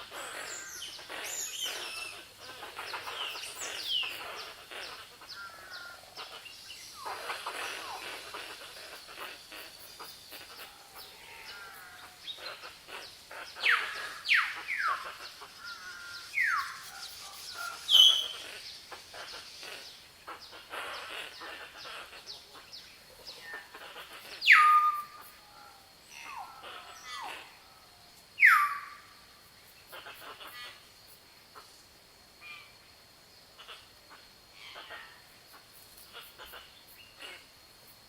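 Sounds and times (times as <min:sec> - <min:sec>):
birds chirping: 0:00.0 - 0:27.8, 0:28.4 - 0:30.8.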